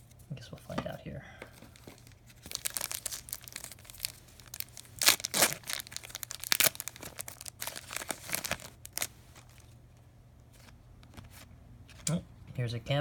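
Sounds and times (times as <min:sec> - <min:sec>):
wrapper tearing and crinkling: 0:01.7 - 0:09.7.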